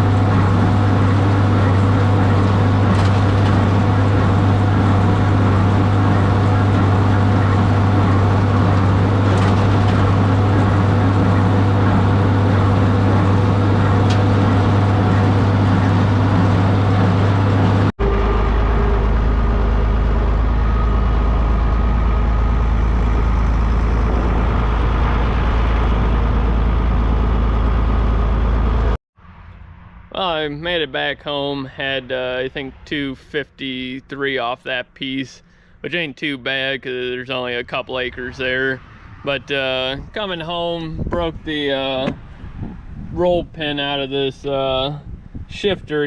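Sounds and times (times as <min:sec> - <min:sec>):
tractor engine running: 0:00.0 - 0:36.4.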